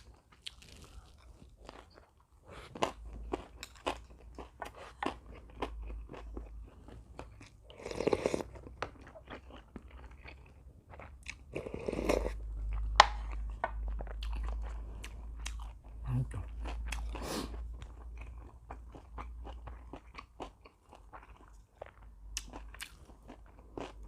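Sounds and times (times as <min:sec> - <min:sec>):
crunchy chewing: 0:16.5 - 0:24.0.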